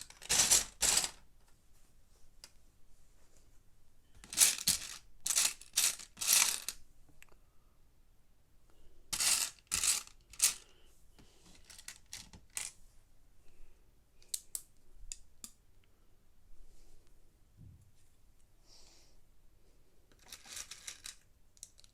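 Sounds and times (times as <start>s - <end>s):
plastic toy bricks clattering: 0.0s - 1.2s, 4.2s - 6.8s, 9.2s - 10.6s, 11.6s - 12.7s, 20.1s - 21.9s.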